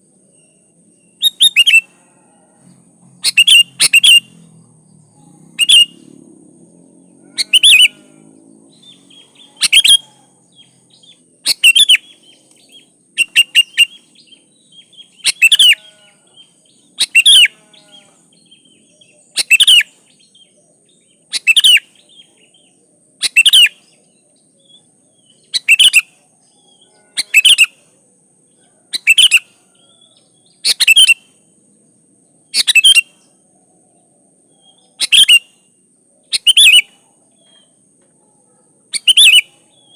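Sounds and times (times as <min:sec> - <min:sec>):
faint bird chirps: 0:00.0 - 0:39.9
bulbul singing loud phrase: 0:05.6 - 0:06.0.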